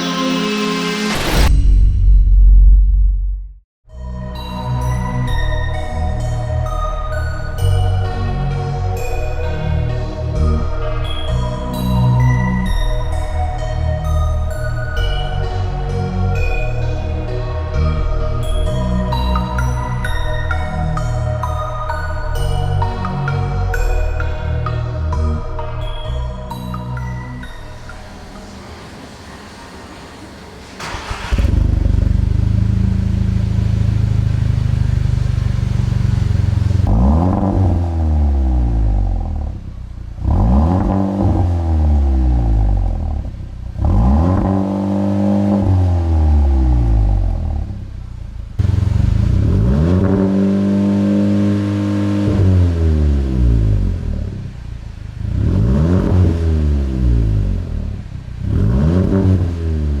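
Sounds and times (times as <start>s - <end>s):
car engine idling and revving: 4.8s - 60.0s.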